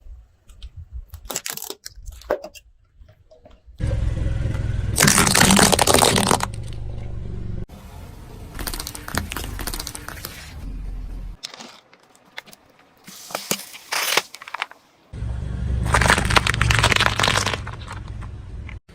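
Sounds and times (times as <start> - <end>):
tyres crushing brittle items: 1.1 - 2.6, 5.0 - 6.8, 11.4 - 14.9, 15.8 - 18.4
low vehicle rumble: 3.8 - 11.4, 15.2 - 18.9.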